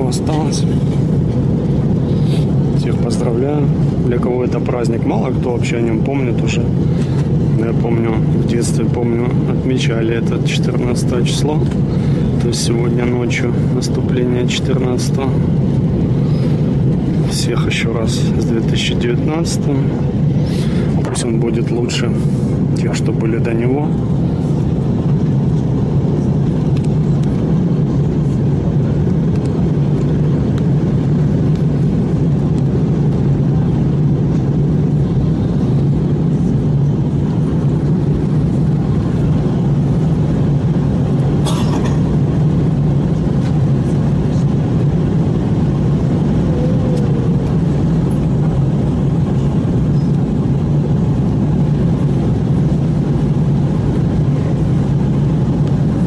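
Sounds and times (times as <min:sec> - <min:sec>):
rushing air: 0:00.0 - 0:04.2, 0:06.3 - 0:09.6, 0:11.2 - 0:14.1, 0:14.8 - 0:22.9, 0:44.7 - 0:56.0
jet engine drone: 0:00.0 - 0:56.0.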